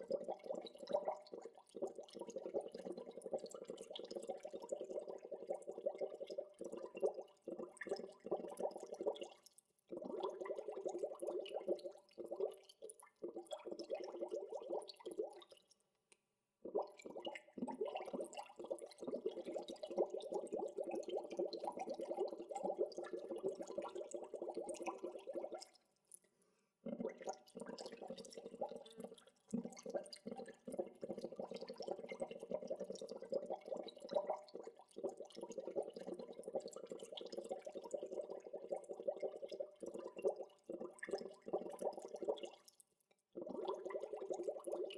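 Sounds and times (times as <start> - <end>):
water bubbling: 43.4 - 44.9.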